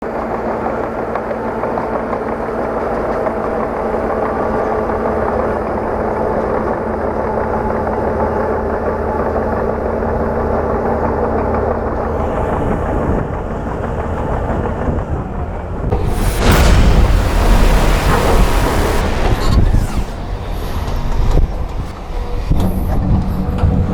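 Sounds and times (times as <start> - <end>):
diesel engine running: 15.9 - 21.9.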